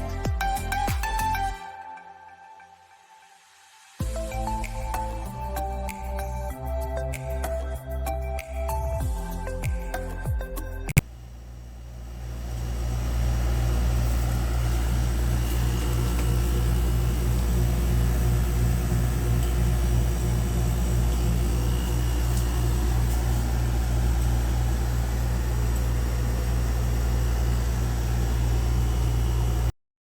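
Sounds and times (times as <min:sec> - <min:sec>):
air conditioner humming: 0:11.0 - 0:29.7.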